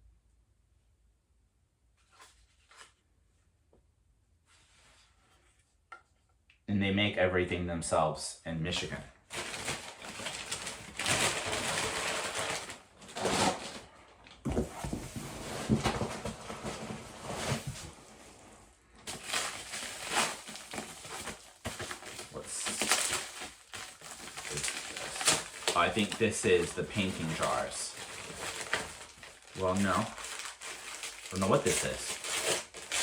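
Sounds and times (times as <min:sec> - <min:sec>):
paper packing rustling and crinkling: 0:08.8 - 0:33.0.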